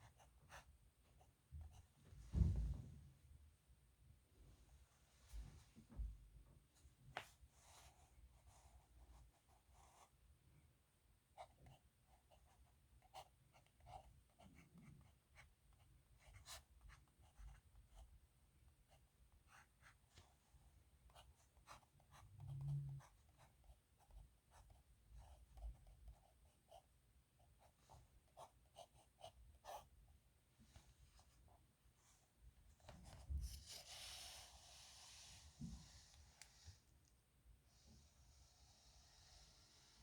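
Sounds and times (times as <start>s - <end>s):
pen scratching on paper: 16.2s - 18.0s, 28.3s - 29.9s.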